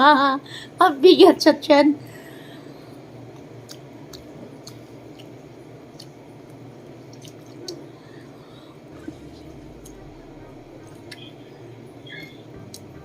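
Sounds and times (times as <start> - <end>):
steady low hum: 0.0 - 13.0
person chewing grapes: 3.6 - 11.2.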